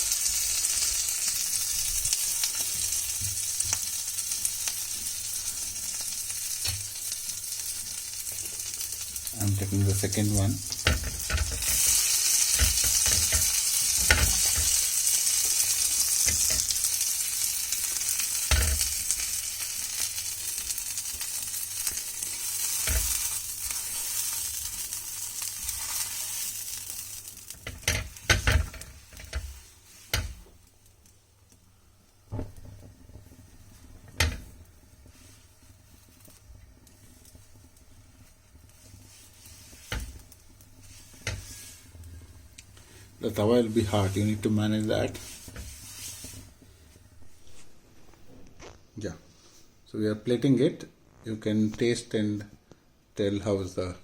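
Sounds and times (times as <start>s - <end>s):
butter sizzling on a hot pan: 0.0s - 47.6s
utensils knocking against pan: 10.8s - 14.8s.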